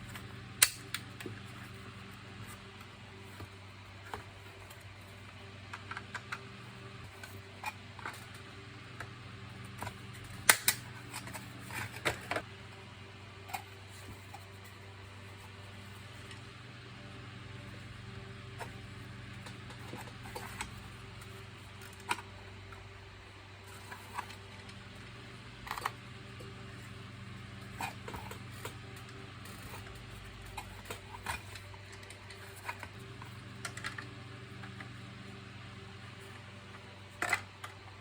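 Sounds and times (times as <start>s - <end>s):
plastic parts clicking and tapping: 0.0s - 1.8s, 2.4s - 12.5s, 18.5s - 22.8s, 23.6s - 26.5s, 27.6s - 35.0s, 36.7s - 38.0s
steady low hum: 0.0s - 38.0s.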